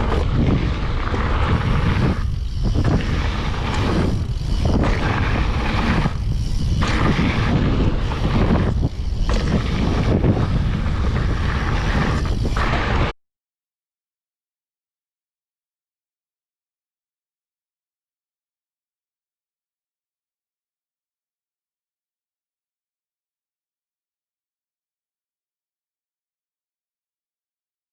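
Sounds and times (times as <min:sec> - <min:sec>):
wind buffeting microphone: 0:00.0 - 0:13.1
low rumble of bike on dirt trail: 0:00.0 - 0:13.2.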